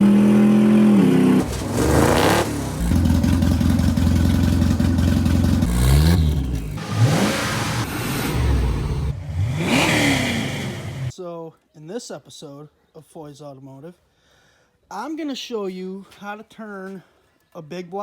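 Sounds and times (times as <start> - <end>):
lawn mower engine revving: 0.0 - 11.1.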